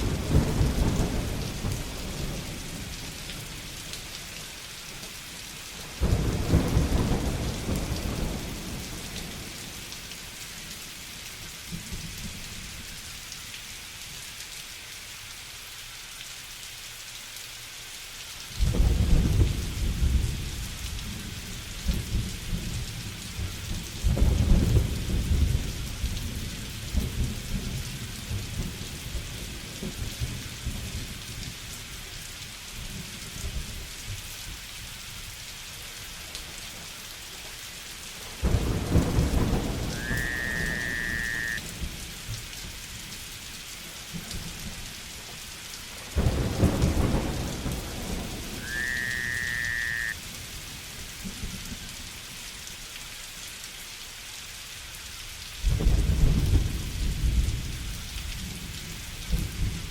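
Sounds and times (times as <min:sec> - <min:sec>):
rolling thunder: 0:00.0 - 0:02.9, 0:06.0 - 0:09.5, 0:38.4 - 0:42.1, 0:46.2 - 0:49.9
steady rain: 0:00.0 - 0:59.9
short high whistled note: 0:40.0 - 0:41.6.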